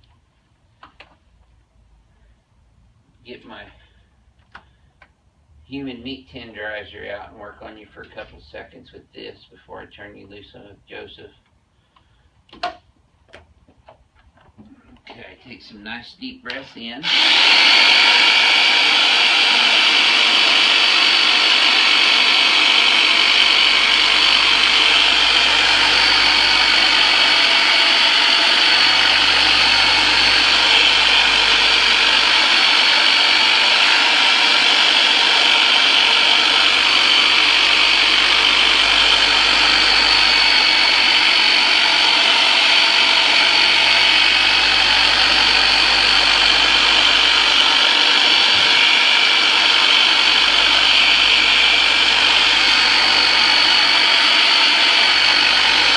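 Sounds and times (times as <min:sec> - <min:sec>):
massager motor buzz: 0:17.0 - 0:55.9.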